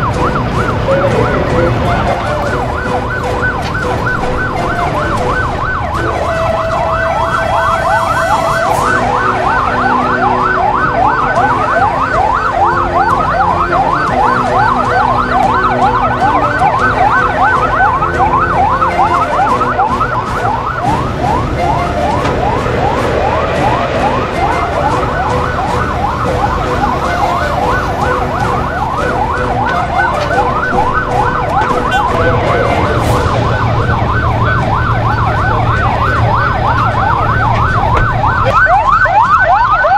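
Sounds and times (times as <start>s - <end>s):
electronic siren yelp: 0.0s - 39.9s
rise-and-fall siren tone: 0.0s - 39.9s
low drone: 20.8s - 28.6s, 30.5s - 38.1s.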